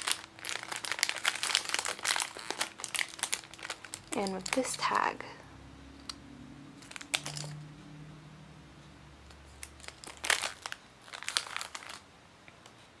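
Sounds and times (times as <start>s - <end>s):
packaging crinkling: 0.0s - 5.0s, 6.8s - 7.6s, 9.6s - 12.0s.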